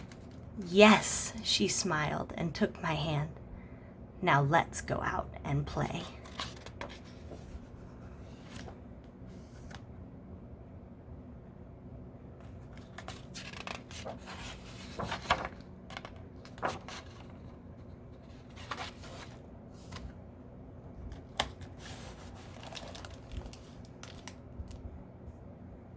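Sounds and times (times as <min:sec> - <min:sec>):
paper pages rustling: 0:00.0 - 0:00.4, 0:06.2 - 0:09.9, 0:12.4 - 0:20.2, 0:21.0 - 0:24.8.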